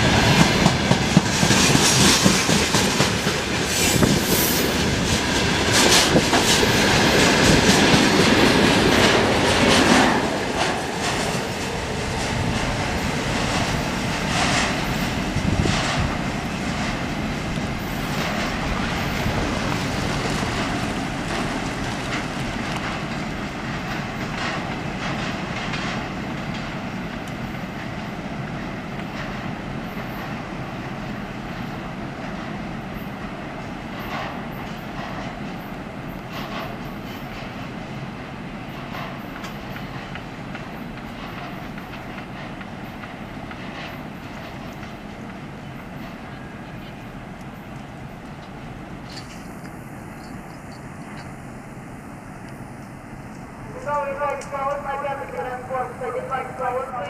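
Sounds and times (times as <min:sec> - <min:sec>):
train wheels clacking on rails: 0:00.0 - 0:49.6.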